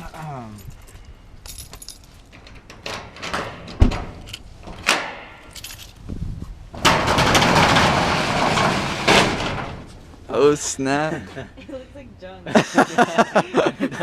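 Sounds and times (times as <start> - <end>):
keys jangling: 0.5 - 3.1, 5.5 - 6.0
door rattling open: 1.8 - 6.0, 6.7 - 10.0.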